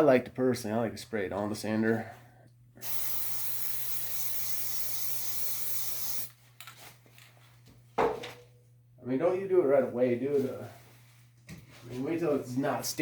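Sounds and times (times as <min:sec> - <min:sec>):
aerosol can spraying hiss: 0:02.8 - 0:06.4.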